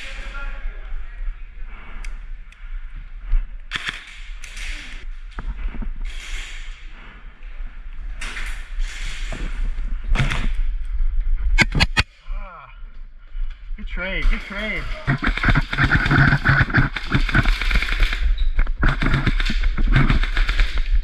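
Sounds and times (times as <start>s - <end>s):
steady low rumble: 0.0s - 21.0s
sharp cracks: 14.2s - 21.0s.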